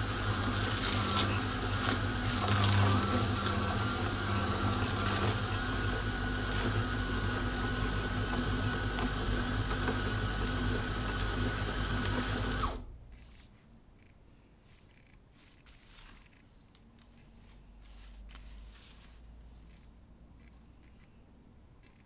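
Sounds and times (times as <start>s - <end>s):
meat grinder motor running: 0.0s - 12.8s
crackling in grinder: 0.0s - 17.2s.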